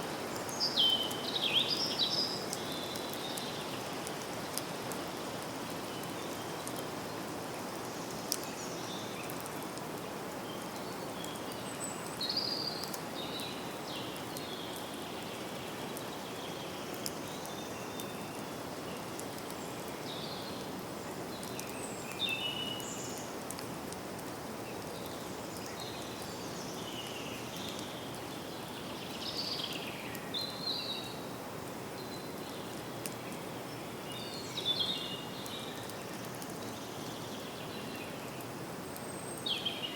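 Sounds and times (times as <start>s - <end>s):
steady hiss of rain or leaves: 0.0s - 39.9s
faint dripping ticks: 0.1s - 31.3s, 32.2s - 39.6s.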